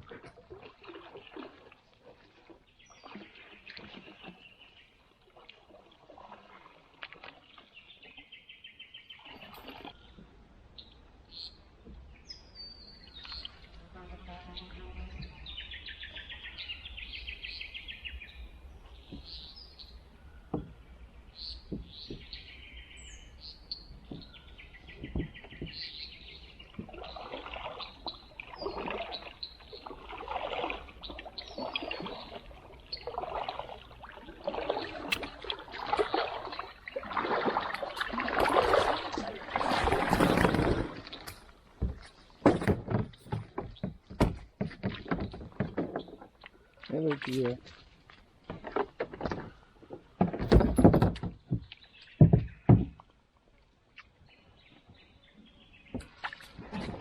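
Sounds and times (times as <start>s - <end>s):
birds chirping and trilling: 7.4s - 47.7s, 54.1s - 57.0s
sharp knocks: 40.2s - 46.0s, 50.2s - 53.0s.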